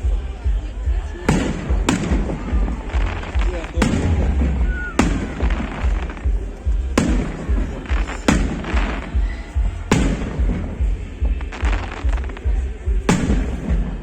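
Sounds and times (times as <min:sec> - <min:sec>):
constant low rumble: 0:00.0 - 0:14.0
fireworks bursting: 0:00.0 - 0:14.0.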